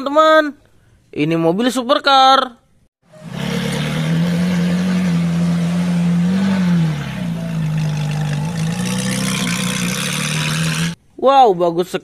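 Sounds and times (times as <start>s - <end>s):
sports car engine running: 3.1s - 11.0s.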